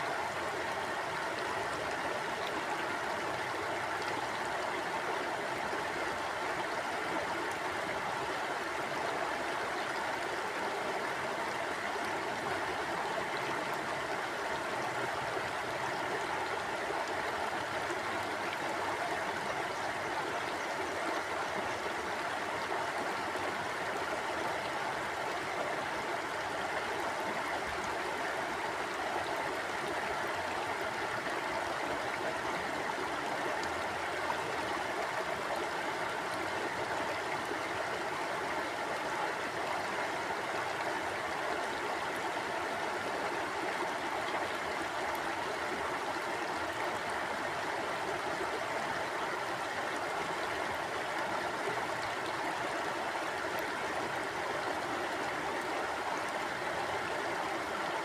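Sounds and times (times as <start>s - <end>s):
stream water gurgling: 0.0s - 58.0s.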